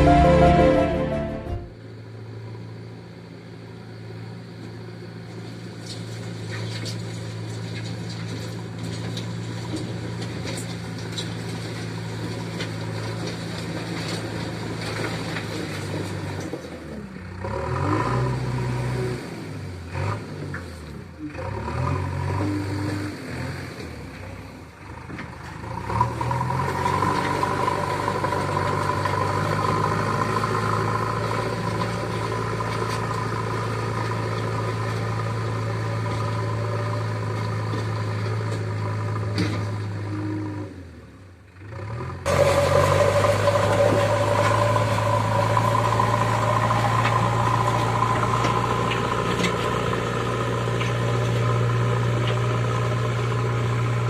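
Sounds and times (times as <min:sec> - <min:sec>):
diesel engine running: 0:24.6 - 0:40.3, 0:41.6 - 0:54.0.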